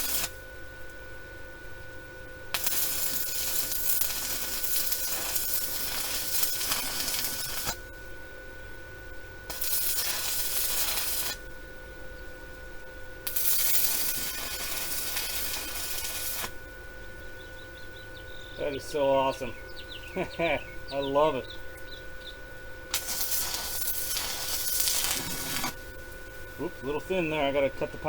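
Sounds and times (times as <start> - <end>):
welding arc crackling and hissing: 0.0 - 0.6, 2.4 - 8.2, 9.5 - 11.7, 12.5 - 17.2, 22.8 - 28.0.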